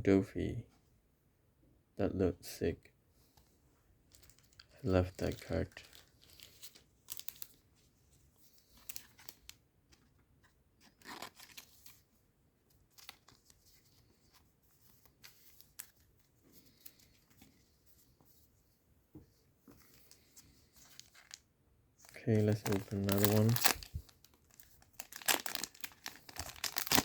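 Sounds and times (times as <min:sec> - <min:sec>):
trading cards rustling: 0:04.1 - 0:07.6, 0:08.4 - 0:10.1, 0:10.8 - 0:12.1, 0:12.7 - 0:18.2, 0:19.7 - 0:21.4, 0:22.0 - 0:27.0.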